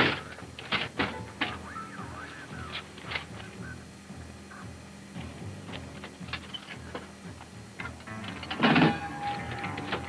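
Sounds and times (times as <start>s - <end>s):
background music: 0.0s - 10.0s.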